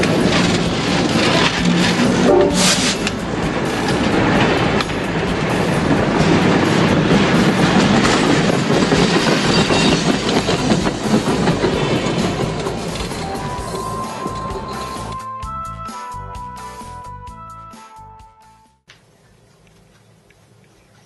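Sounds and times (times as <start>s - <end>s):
train wheels clattering over rails: 0.0s - 15.2s.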